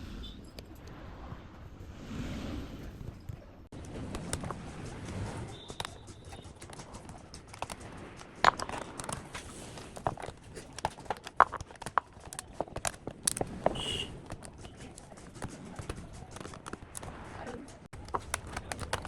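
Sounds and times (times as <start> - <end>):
laptop parts clicking and knocking: 5.6 - 14.7, 17.9 - 19.0.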